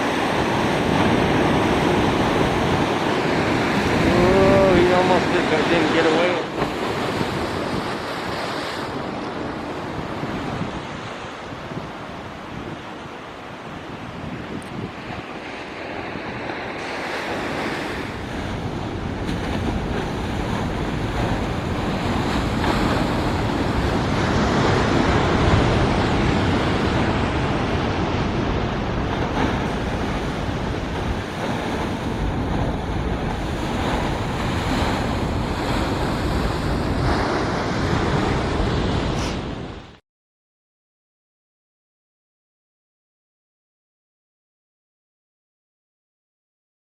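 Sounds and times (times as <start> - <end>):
wind buffeting microphone: 0.0 - 39.9
ocean surf washing: 0.0 - 40.0.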